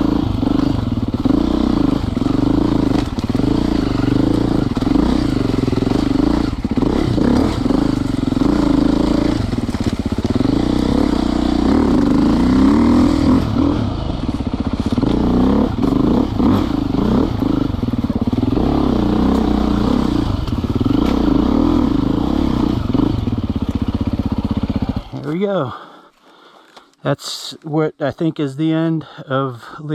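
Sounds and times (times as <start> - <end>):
dirt bike engine revving: 0.0 - 25.8
bike clattering over rough ground: 2.1 - 12.4.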